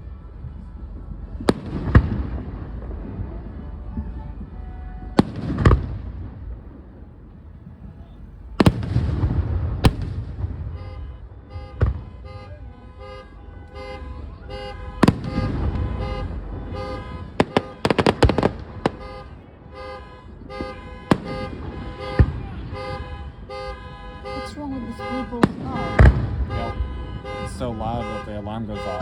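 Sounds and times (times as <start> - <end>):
fireworks bangs: 0.4 - 29.0
car alarm: 10.6 - 29.0.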